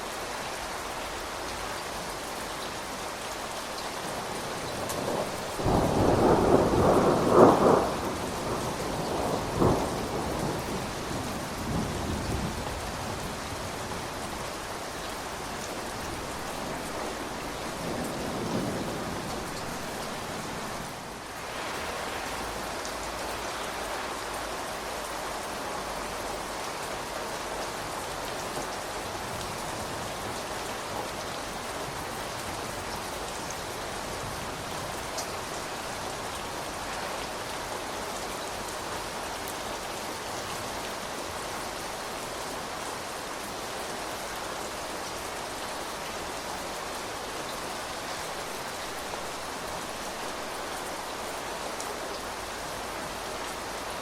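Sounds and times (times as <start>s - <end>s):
rain falling on surfaces: 0.0s - 54.0s
thunder rumbling: 4.6s - 13.2s.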